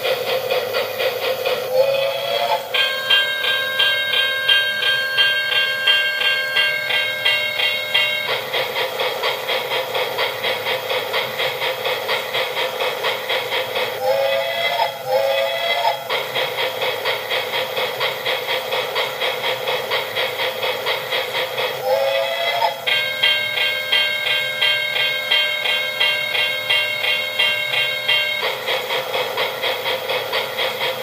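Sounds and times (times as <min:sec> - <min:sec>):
steam train chuffing: 0:00.0 - 0:31.0
ringing bell: 0:02.7 - 0:08.6, 0:22.9 - 0:28.6
train whistle blasts: 0:14.0 - 0:16.0, 0:21.8 - 0:25.2.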